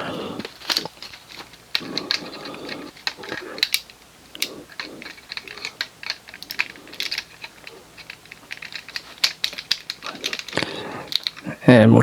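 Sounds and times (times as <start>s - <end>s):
plastic toy parts clicking: 0.0s - 11.5s.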